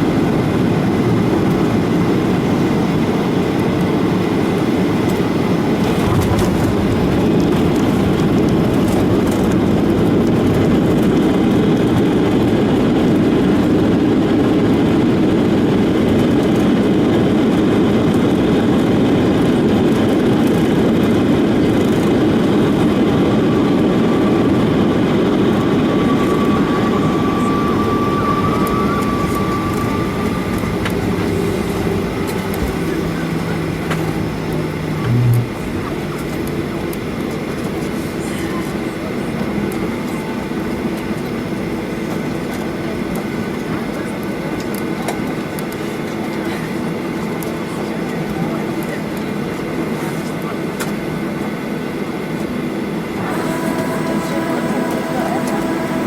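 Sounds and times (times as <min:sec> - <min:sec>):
airliner cabin engine noise: 0:00.0 - 0:56.0
faint steady whine: 0:21.1 - 0:44.2, 0:53.1 - 0:56.0.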